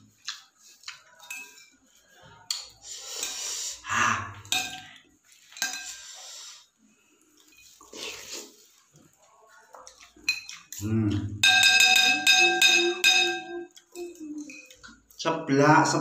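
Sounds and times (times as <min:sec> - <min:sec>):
spoon clinking and scraping dish: 0:00.9 - 0:03.5, 0:04.4 - 0:06.2, 0:07.4 - 0:08.5, 0:09.8 - 0:10.8, 0:11.4 - 0:15.1.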